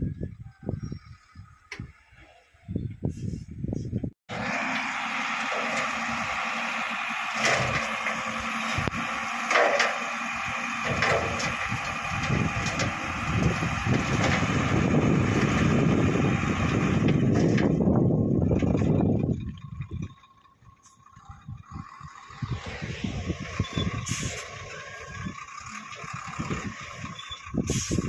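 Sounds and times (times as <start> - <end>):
bulldozer diesel engine rumbling: 0.0 - 28.0.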